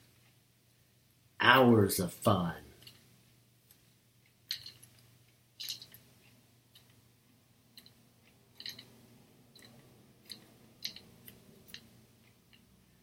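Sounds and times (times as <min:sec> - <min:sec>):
metal tripod head clicking and scraping: 0:08.6 - 0:08.9.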